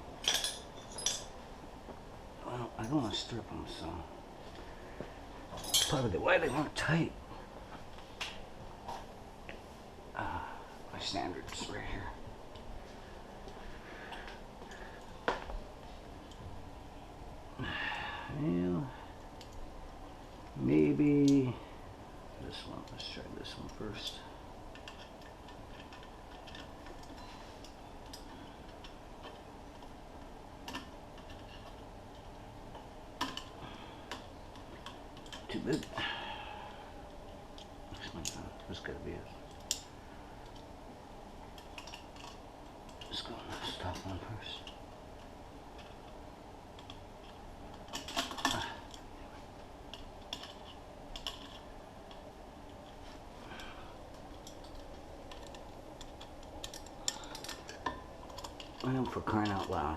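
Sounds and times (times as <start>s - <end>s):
metal tools clinking against bolts: 0.2s - 1.3s, 5.5s - 6.9s.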